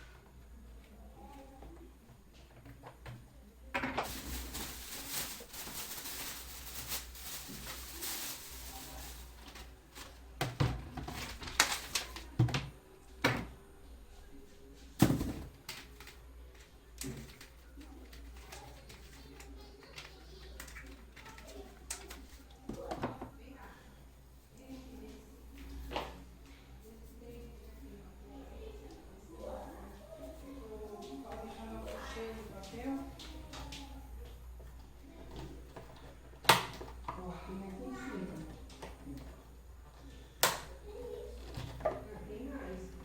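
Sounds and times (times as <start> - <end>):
plastic parts rustling: 3.8 - 12.4, 15.0 - 22.4.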